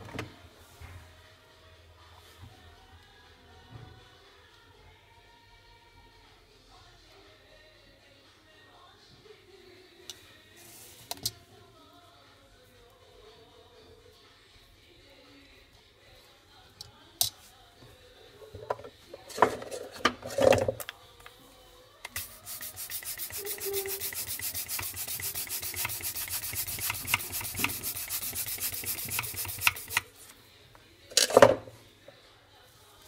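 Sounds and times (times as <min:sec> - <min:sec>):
rapid scraping strokes: 0:22.1 - 0:30.1.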